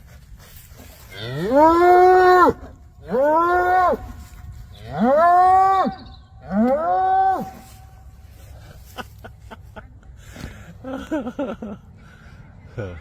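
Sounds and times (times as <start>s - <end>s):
cattle mooing: 1.1s - 4.2s, 4.8s - 7.7s.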